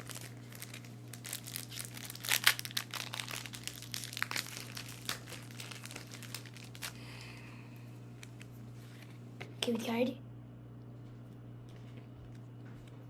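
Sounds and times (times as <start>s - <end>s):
foil wrapper crinkling and tearing: 0.0s - 7.6s
low steady hum: 0.0s - 13.0s.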